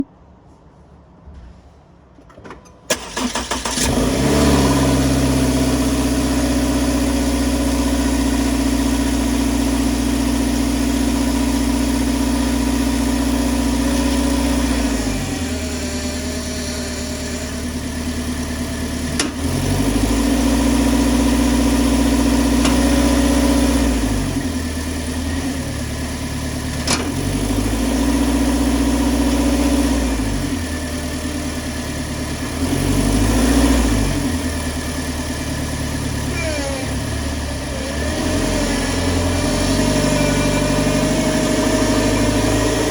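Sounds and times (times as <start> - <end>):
car engine running: 2.9 - 42.9
transmission grinding drone: 36.2 - 42.9.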